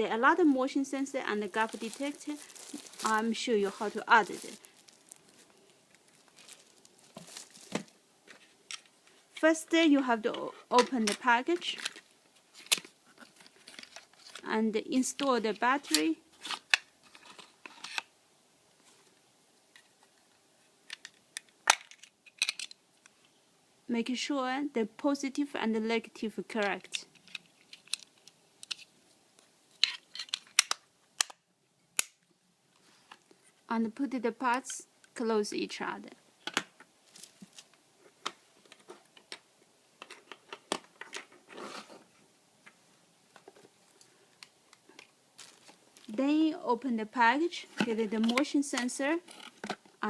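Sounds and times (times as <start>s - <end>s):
plastic parts clicking and tapping: 20.9s - 23.1s, 26.6s - 28.9s, 29.8s - 31.4s, 38.2s - 41.4s.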